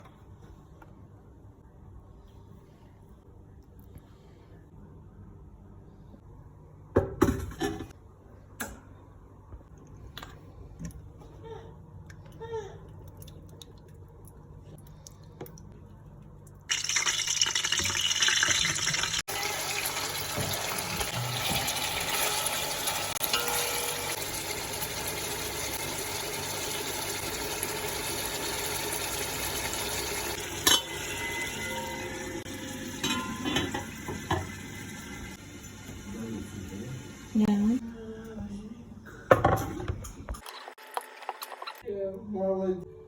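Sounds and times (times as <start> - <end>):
pots and utensils clattering: 7.1 - 8.0, 20.2 - 25.3, 30.3 - 36.1.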